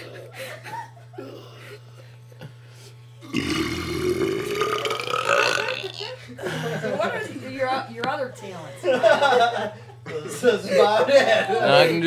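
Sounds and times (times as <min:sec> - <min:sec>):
child burping loudly: 0:03.2 - 0:06.2.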